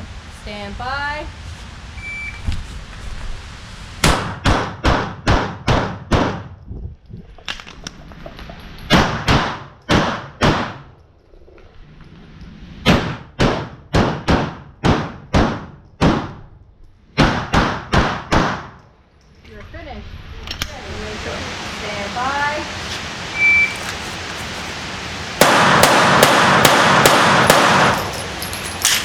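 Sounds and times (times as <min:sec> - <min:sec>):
pistol shots: 0:04.0 - 0:06.5, 0:08.9 - 0:10.9, 0:12.8 - 0:16.4, 0:17.2 - 0:18.8, 0:25.4 - 0:28.1.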